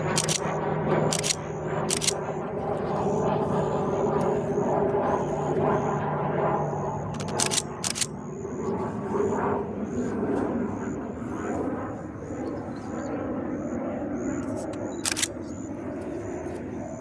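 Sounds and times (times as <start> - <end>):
propeller plane flying by: 0.0 - 17.0
sharp clicks: 0.1 - 2.3, 7.1 - 8.2, 14.4 - 15.6.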